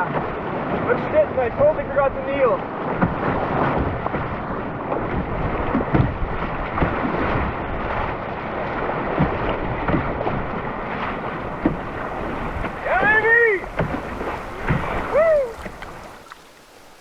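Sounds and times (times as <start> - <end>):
low thumps on canoe: 2.8 - 8.2, 8.8 - 17.0
whitewater rapids rushing: 10.3 - 17.0.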